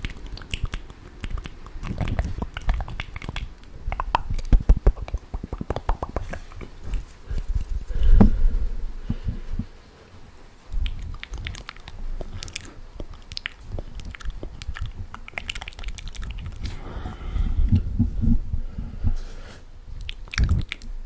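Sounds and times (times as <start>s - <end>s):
mouth clicks and crackles: 0.0s - 19.0s, 19.9s - 21.0s
low rumble: 6.4s - 19.2s.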